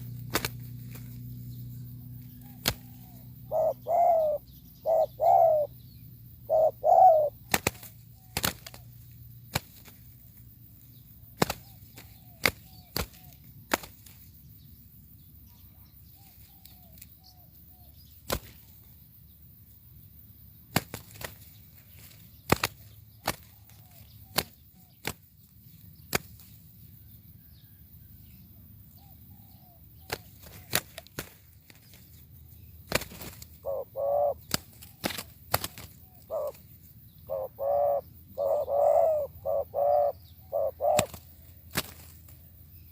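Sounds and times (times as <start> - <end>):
faint bird chirps: 0.0 - 42.9
dove cooing: 1.9 - 8.9, 33.0 - 42.0.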